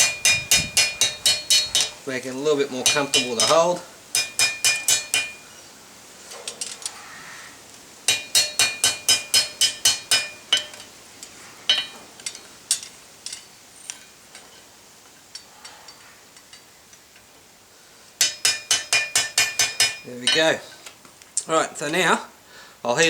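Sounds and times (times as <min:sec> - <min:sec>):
hammer striking metal on anvil: 0:00.0 - 0:02.0, 0:02.8 - 0:05.4, 0:08.1 - 0:10.9, 0:11.7 - 0:13.4, 0:18.2 - 0:20.6.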